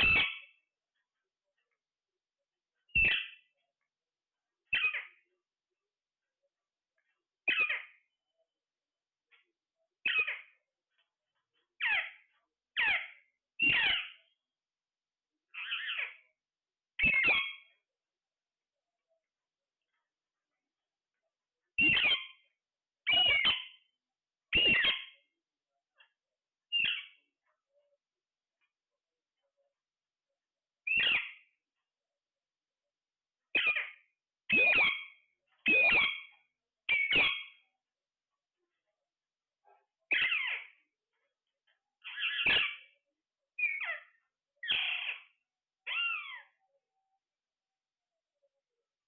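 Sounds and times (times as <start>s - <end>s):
parrot squawking: 0.0s - 0.5s, 3.0s - 3.4s, 4.7s - 5.2s, 7.5s - 8.0s, 10.0s - 10.5s, 11.8s - 12.2s, 12.8s - 14.2s, 15.6s - 16.2s, 17.0s - 17.8s, 21.8s - 22.4s, 23.0s - 23.8s, 24.5s - 25.2s, 26.7s - 27.2s, 30.9s - 31.4s, 33.5s - 37.6s, 40.1s - 40.8s, 42.0s - 42.8s, 43.6s - 46.6s.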